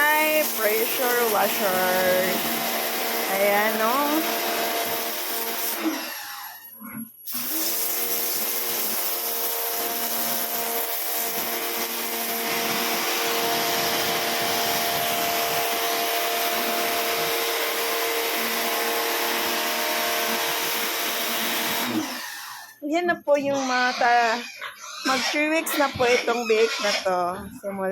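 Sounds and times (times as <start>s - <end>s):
water jet hissing: 0.0s - 4.2s, 7.3s - 13.2s
pressure washer motor humming: 0.0s - 6.3s, 7.3s - 22.8s.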